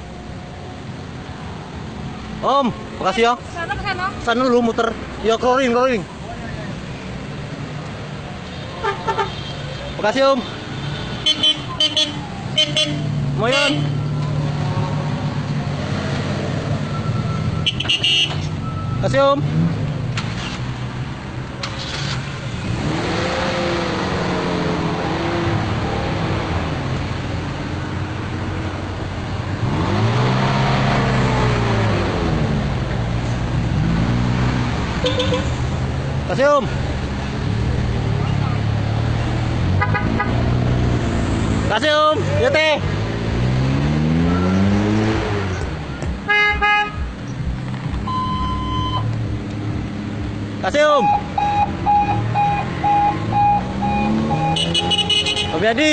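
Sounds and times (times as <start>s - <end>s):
cars driving past: 0.0s - 55.9s
car engine revving: 11.1s - 46.2s, 47.0s - 55.9s
car horn toots: 11.2s - 14.0s, 17.6s - 18.5s, 35.0s - 35.6s, 39.8s - 40.4s, 46.2s - 47.1s, 51.0s - 55.6s
high-pitched beep: 18.6s - 19.1s, 48.0s - 49.1s, 51.0s - 55.0s.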